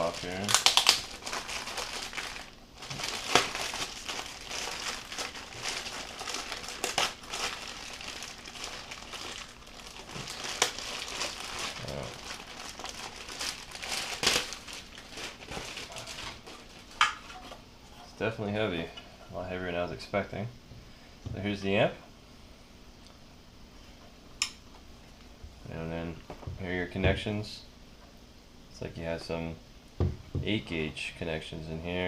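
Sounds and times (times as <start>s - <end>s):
packing tape peeling: 0.0s - 17.3s
packaging crinkling and rustling: 0.0s - 17.6s
sharp tape snaps: 0.4s - 1.1s.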